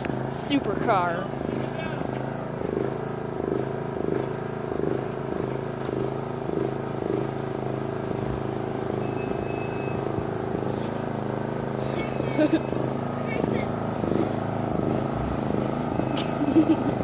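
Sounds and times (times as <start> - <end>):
car engine running: 0.0 - 17.0
riding lawn mower engine: 0.0 - 17.0.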